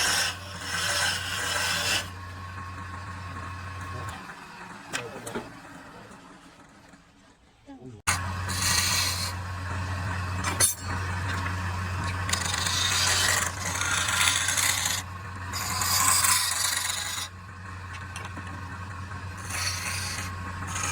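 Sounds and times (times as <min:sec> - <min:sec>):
tool rasping across wood: 0:00.0 - 0:02.1, 0:08.4 - 0:09.4, 0:12.0 - 0:17.3, 0:19.4 - 0:20.9.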